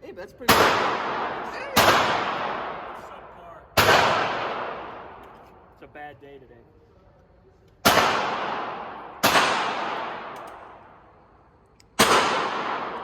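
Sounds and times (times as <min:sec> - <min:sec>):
gunshots with echo: 0:00.5 - 0:05.2, 0:07.8 - 0:11.0, 0:12.0 - 0:13.0.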